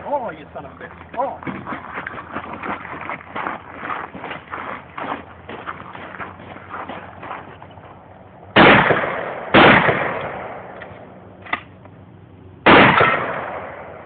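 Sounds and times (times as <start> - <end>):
shotgun shots echoing: 8.6 - 10.9, 12.6 - 14.0.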